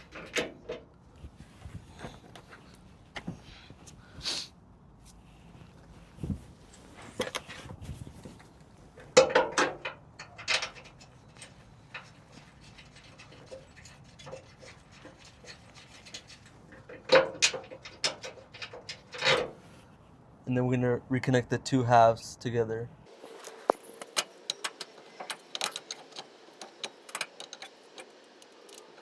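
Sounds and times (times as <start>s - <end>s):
metal clanks and knocks: 9.0s - 12.1s, 12.8s - 19.6s.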